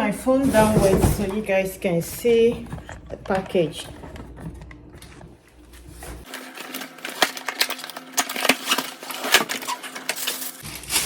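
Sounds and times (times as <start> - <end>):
packaging rustling: 2.5 - 11.0.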